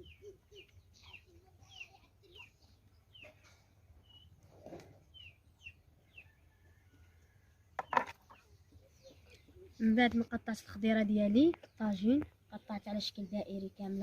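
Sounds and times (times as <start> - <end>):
faint bird chirps: 0.0 - 10.7.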